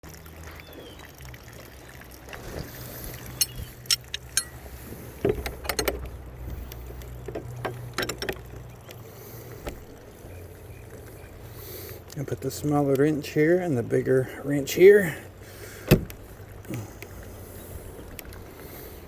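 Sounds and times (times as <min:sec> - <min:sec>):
metal tools clinking on padlock: 0:03.4 - 0:04.6.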